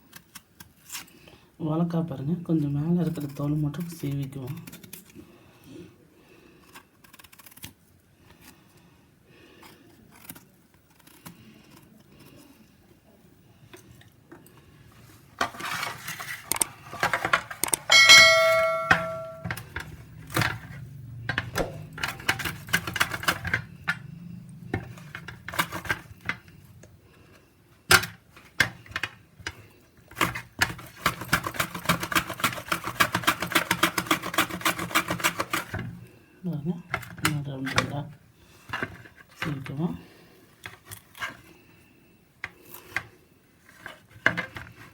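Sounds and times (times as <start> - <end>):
knife scraping plantain skin: 2.6 - 5.3, 6.6 - 8.7, 9.5 - 12.7, 30.1 - 35.8
metal utensil clanging: 16.5 - 23.7.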